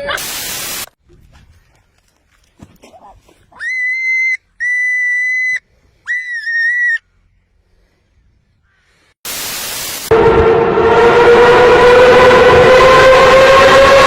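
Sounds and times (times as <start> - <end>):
burst of hiss: 0.2 - 0.9, 9.2 - 10.1
loud low-toned blast: 9.3 - 14.0.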